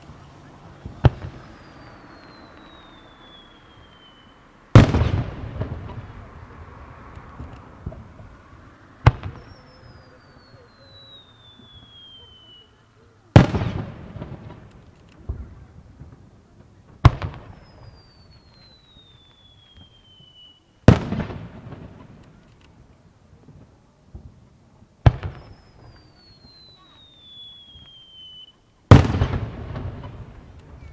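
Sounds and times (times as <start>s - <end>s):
firework burst bang: 0.0s - 4.0s, 4.8s - 8.4s, 9.0s - 10.7s, 28.9s - 30.9s
falling firework whistle: 0.9s - 6.6s, 9.1s - 12.8s, 17.2s - 20.8s, 25.2s - 30.9s
firework launch bang: 4.7s - 8.4s, 28.9s - 30.9s.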